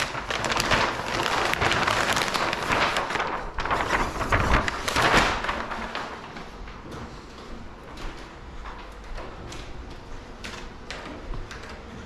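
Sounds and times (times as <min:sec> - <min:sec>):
vinyl film crackling: 0:00.0 - 0:06.9.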